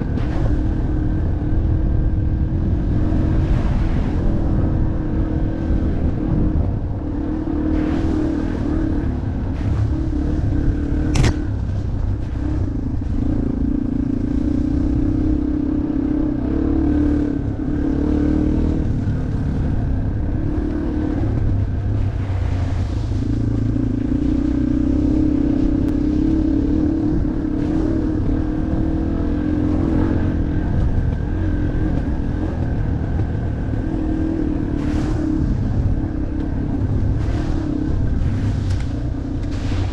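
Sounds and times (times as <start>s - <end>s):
motorcycle engine running: 0.0s - 39.9s
sharp click: 11.0s - 11.4s.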